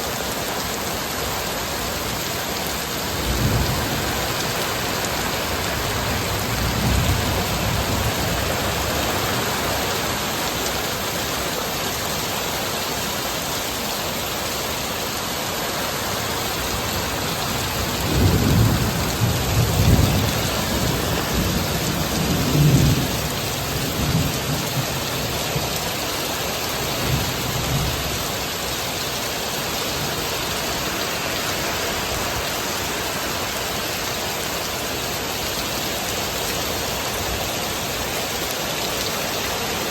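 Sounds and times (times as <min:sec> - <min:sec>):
heavy rain pouring: 0:00.0 - 0:39.9
rolling thunder: 0:18.0 - 0:23.2.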